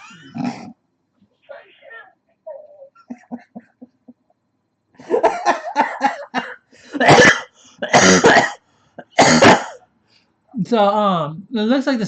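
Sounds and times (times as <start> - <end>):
person coughing loudly: 5.1 - 9.8.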